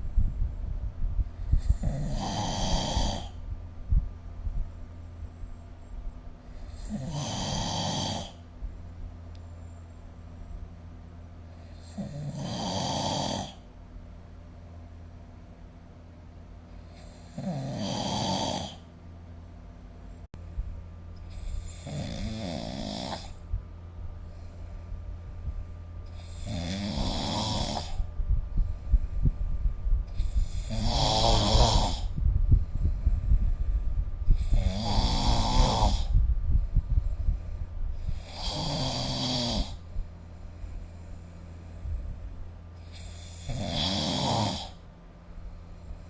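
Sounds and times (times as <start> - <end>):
person snoring: 1.6 - 3.4, 6.5 - 8.4, 11.6 - 13.6, 16.9 - 18.9, 21.3 - 23.4, 26.1 - 28.1, 30.1 - 32.2, 34.3 - 36.2, 38.0 - 39.8, 42.8 - 44.8.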